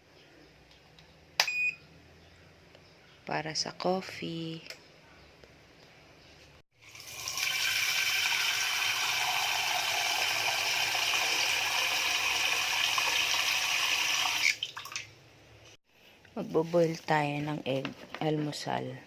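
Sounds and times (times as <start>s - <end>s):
water running from a tap: 6.8s - 15.1s.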